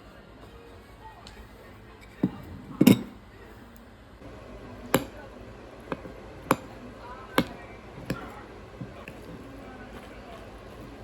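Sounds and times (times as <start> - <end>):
kitchenware clinking: 1.9 - 3.2, 4.2 - 11.0.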